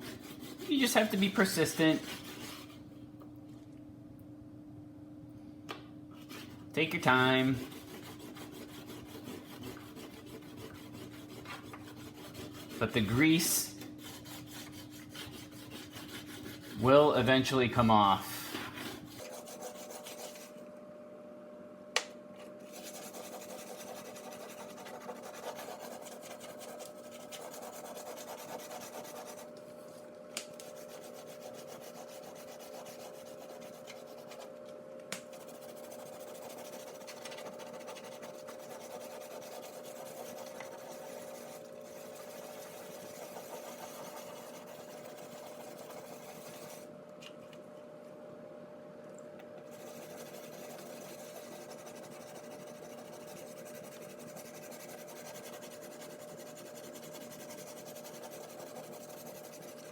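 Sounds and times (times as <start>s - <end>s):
faint steady hum: 0.0s - 59.9s
tablet scrubbing against glass: 22.7s - 29.5s, 35.4s - 46.9s, 49.7s - 59.9s.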